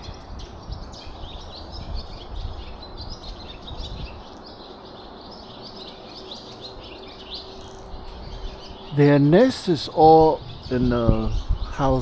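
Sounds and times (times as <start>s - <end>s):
small birds chirping: 0.0s - 12.0s
wind rumble on microphone: 0.0s - 12.0s.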